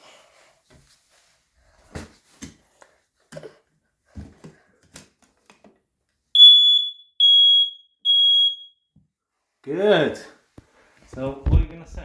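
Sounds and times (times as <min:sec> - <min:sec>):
smoke detector beeps: 0:06.4 - 0:08.8.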